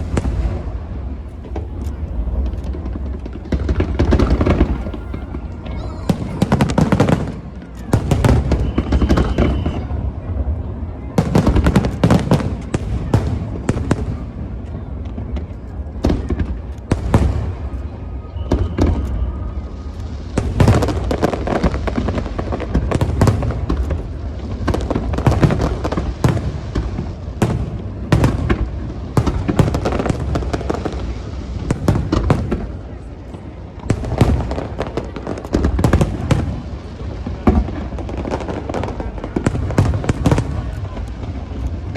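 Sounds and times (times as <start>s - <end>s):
deep rumble: 0.0s - 7.3s
fireworks bursting with bangs: 0.0s - 41.9s.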